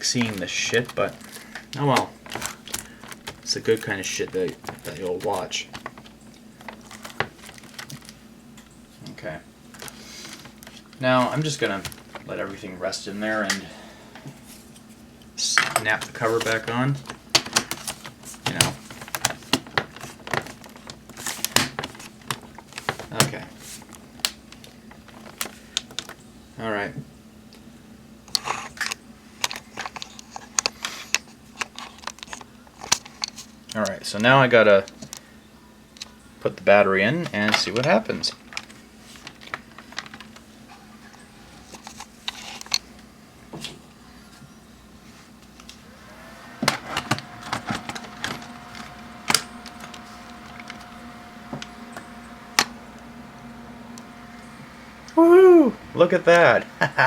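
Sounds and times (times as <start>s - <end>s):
faint steady hum: 0.0s - 57.0s
laptop whine: 39.4s - 57.0s.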